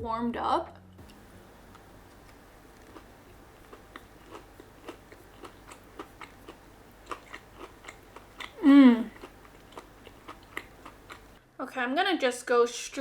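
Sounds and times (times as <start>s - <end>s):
crunchy chewing: 1.0s - 11.4s
soft mouth clicks: 1.0s - 11.4s.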